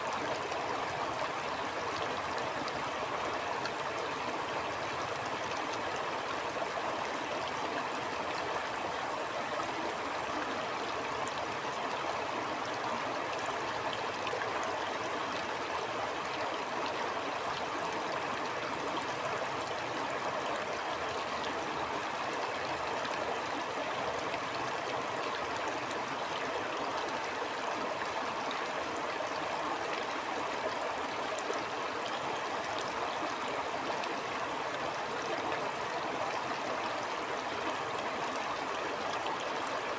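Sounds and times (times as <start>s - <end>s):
stream flowing: 0.0s - 39.9s.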